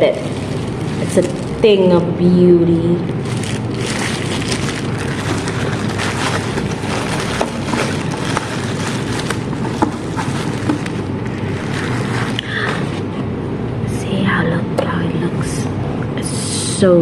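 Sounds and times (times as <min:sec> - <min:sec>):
packaging rustling and clicking: 0:03.2 - 0:13.0.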